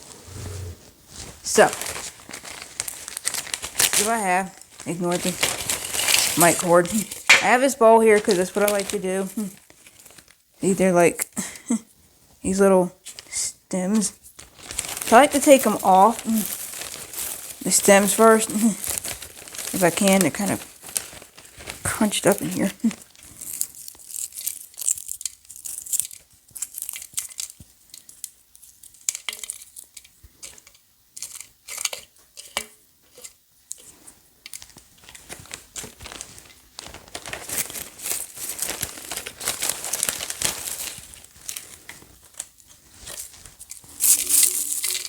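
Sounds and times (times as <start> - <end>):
dry leaves crackling and rustling: 1.1 - 11.2, 12.5 - 27.5, 34.7 - 45.0.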